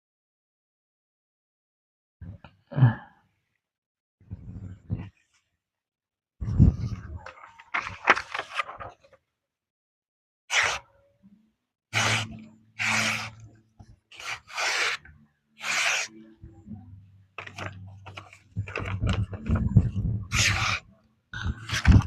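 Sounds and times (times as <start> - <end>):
knife rasping through material: 10.5 - 10.8, 12.0 - 13.4, 14.1 - 16.1, 20.3 - 20.8.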